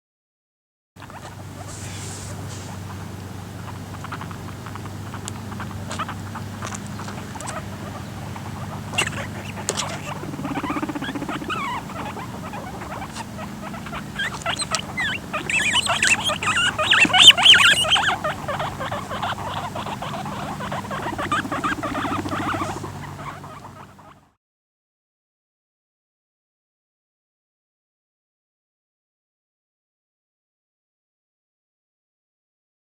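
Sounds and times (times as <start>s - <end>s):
guinea pigs squealing and squeaking: 1.0s - 24.3s
steady low hum: 1.0s - 24.3s.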